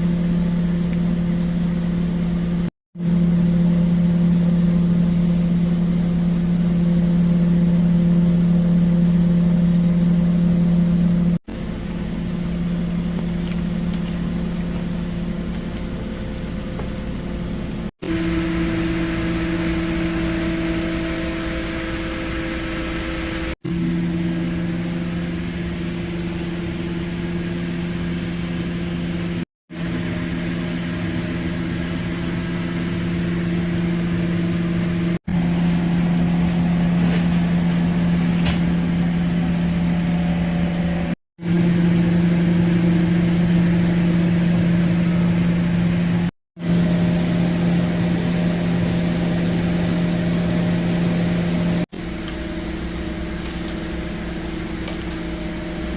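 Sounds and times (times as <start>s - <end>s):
fan motor humming: 11.1s - 41.1s, 51.9s - 55.9s.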